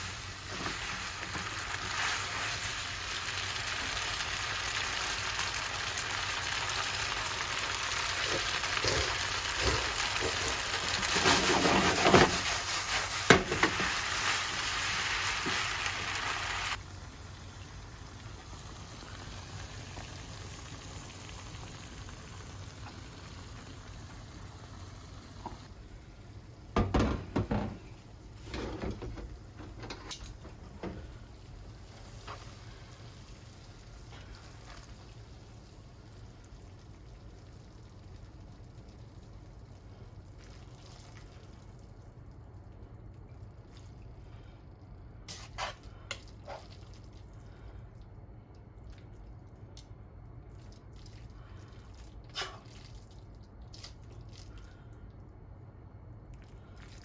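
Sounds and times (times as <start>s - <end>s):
low steady hum: 0.0s - 57.0s
kitchen knocks and clinks: 26.8s - 27.8s.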